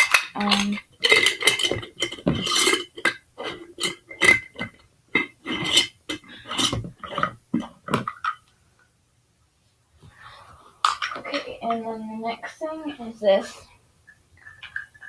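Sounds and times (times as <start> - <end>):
glass jar clinking: 0.0 - 8.4.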